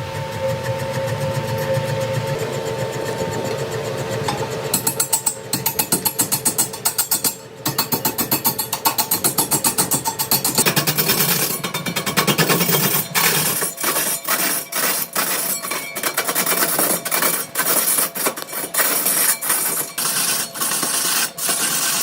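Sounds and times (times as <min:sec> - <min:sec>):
power tool cutting wood: 0:12.3 - 0:22.0.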